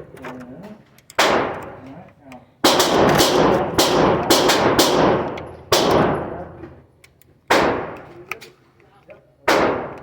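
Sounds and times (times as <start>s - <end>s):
pistol shots echoing: 1.2s - 1.8s, 2.6s - 6.6s, 7.5s - 8.2s, 9.5s - 10.0s.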